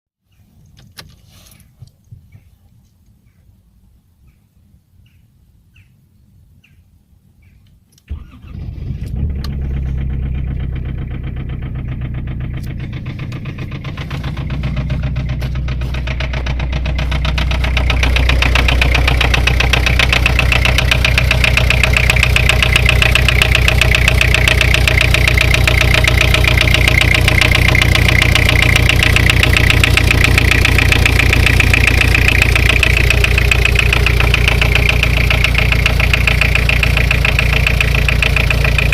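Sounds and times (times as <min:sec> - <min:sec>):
diesel engine cranking and idling: 0:08.1 - 0:38.9
engine knock clatter: 0:09.1 - 0:38.9.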